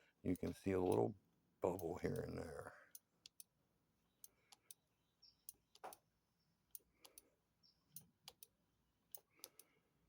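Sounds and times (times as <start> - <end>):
faint sharp clicks: 9.1 - 9.7.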